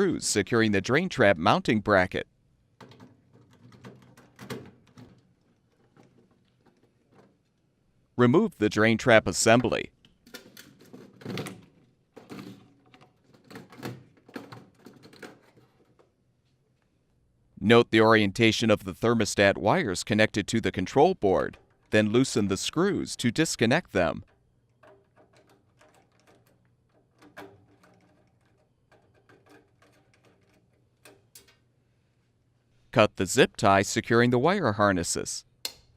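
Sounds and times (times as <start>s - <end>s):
light knocks clicks and rattles: 2.8s - 7.6s, 9.6s - 16.2s, 24.2s - 31.6s.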